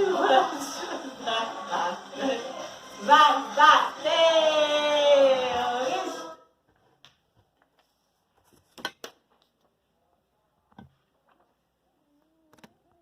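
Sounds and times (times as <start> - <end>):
children's song: 0.0 - 6.6.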